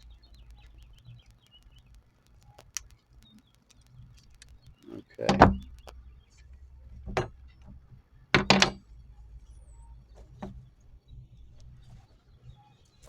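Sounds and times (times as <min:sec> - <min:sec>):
knocks and clunks: 0:04.9 - 0:05.9, 0:08.4 - 0:08.8.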